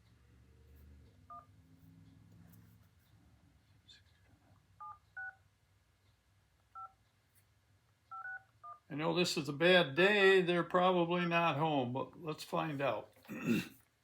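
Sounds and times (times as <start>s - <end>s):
phone keypad dialing beeps: 4.8s - 5.4s, 8.1s - 8.8s.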